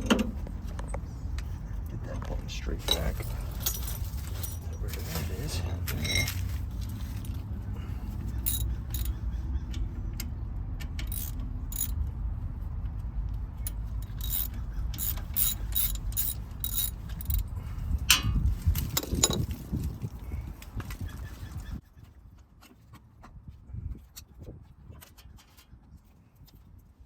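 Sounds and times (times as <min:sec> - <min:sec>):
steady low rumble: 0:00.0 - 0:20.8
hand tools clicking and clinking: 0:02.8 - 0:07.5, 0:08.2 - 0:09.1, 0:10.8 - 0:12.0, 0:13.6 - 0:17.5, 0:18.1 - 0:19.8
scraping: 0:13.6 - 0:17.5.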